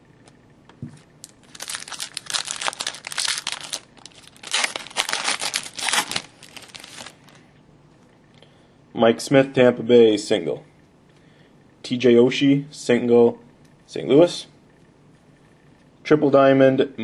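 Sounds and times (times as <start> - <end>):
cards and foil packaging rustling: 1.2 - 7.4.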